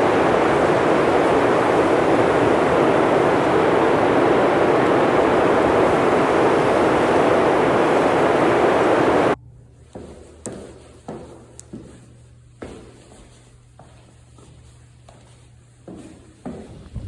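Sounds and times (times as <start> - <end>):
loud rushing noise: 0.0 - 9.4.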